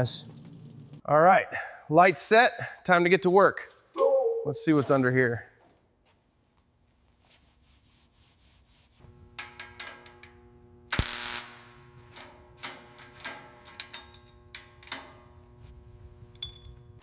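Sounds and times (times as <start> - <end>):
steady low hum: 9.0 - 17.0
hand tools clicking on metal: 12.1 - 15.6.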